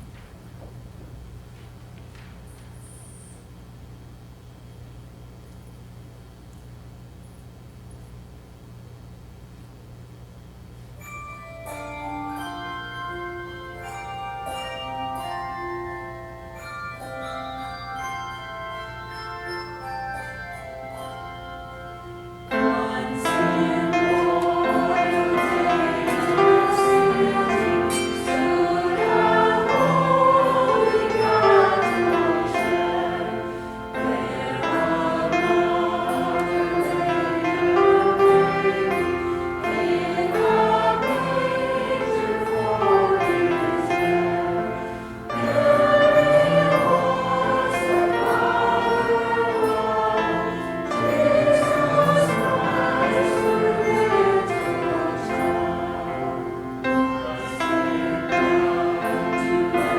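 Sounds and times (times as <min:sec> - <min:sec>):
choir singing in parts: 0:22.5 - 0:59.9.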